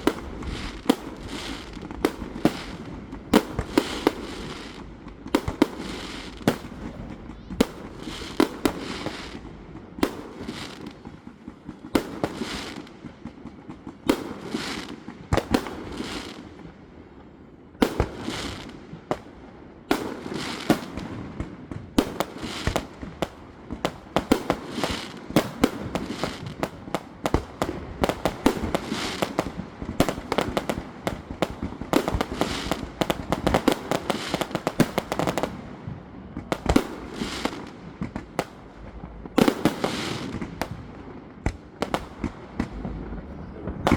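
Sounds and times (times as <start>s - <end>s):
firework crackling: 0.0s - 16.6s, 17.8s - 19.3s, 21.7s - 43.9s.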